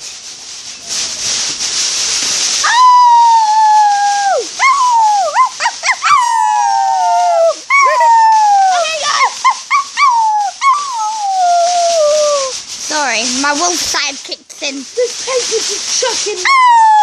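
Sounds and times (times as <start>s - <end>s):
steady hiss: 0.0s - 17.0s
child howling like a wolf: 2.6s - 12.5s, 16.4s - 17.0s.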